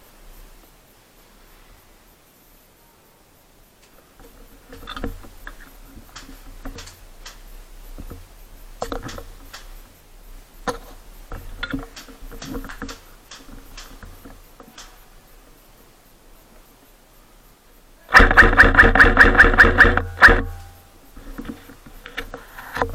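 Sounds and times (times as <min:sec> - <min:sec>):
irregular rustling: 0:03.7 - 0:22.9
sharp clicks and taps: 0:04.7 - 0:09.8, 0:10.6 - 0:15.0.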